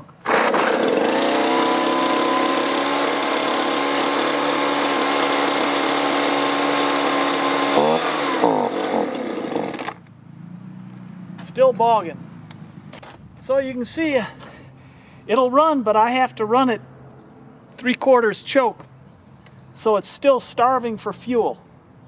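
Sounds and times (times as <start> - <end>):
leaf blower engine running: 0.0 - 10.0.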